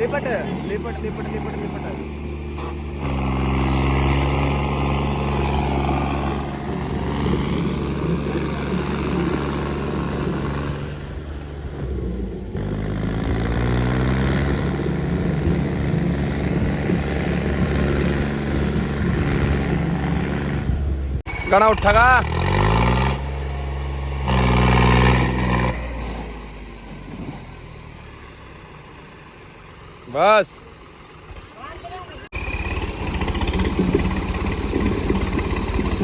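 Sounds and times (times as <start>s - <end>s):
tractor diesel engines revving: 0.0s - 36.0s.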